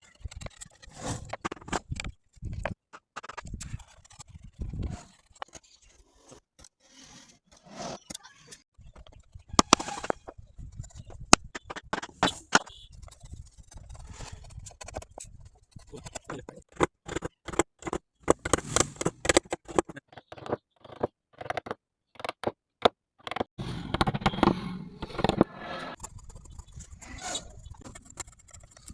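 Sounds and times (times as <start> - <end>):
scraping wood: 0.8 - 3.5, 9.5 - 12.8, 15.9 - 22.4, 23.3 - 26.0.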